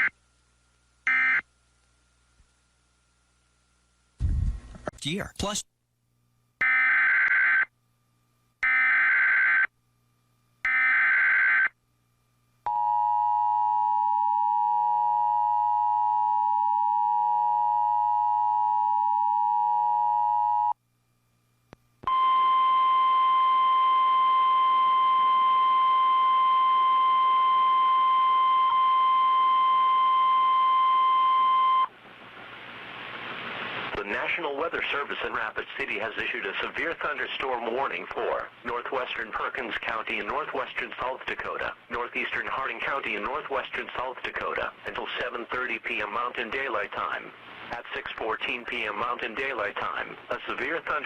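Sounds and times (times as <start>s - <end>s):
radio static hiss: 32.0s - 51.0s.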